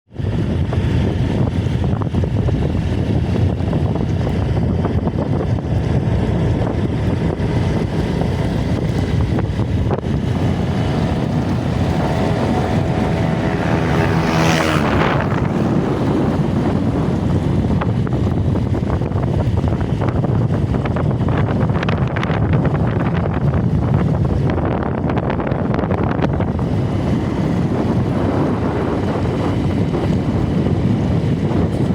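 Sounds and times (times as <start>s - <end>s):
low rumbling wind and road noise: 0.1s - 31.9s
rushing whoosh: 0.5s - 20.8s
strange multi-tone pitched sound: 10.1s - 17.2s.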